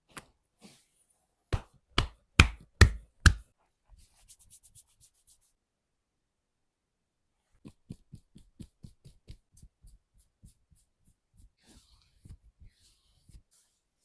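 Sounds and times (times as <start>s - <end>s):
hands tapping in massage strokes: 1.5s - 3.5s, 7.6s - 11.0s.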